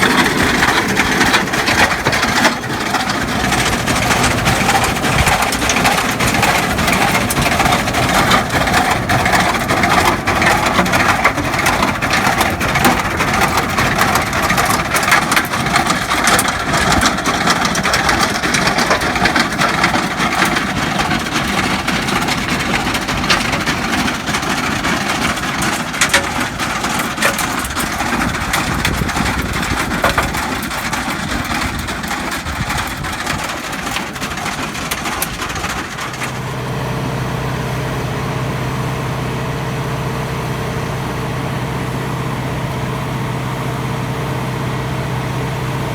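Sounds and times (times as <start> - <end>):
machine clicks and clatter: 0.0 - 36.6
tractor diesel engine running: 0.0 - 45.9.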